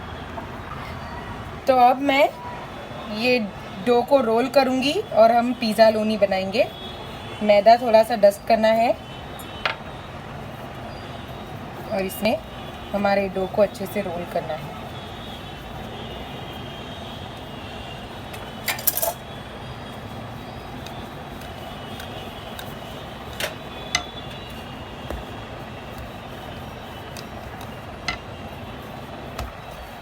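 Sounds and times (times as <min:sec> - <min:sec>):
steady background hum: 0:00.0 - 0:30.0
rolling pin rolling dough: 0:11.4 - 0:30.0.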